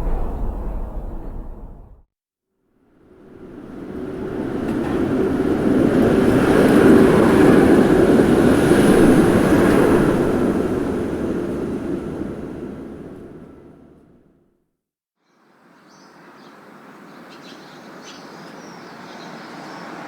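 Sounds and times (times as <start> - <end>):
train passing by: 0.0 - 2.0, 3.1 - 14.3.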